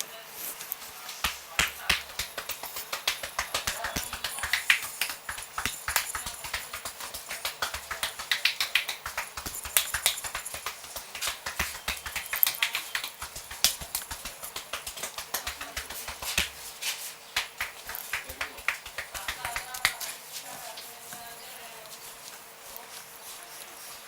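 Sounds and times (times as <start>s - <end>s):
scratching on scalp: 0.4s - 24.0s
fingers tapping on scalp: 1.2s - 20.1s.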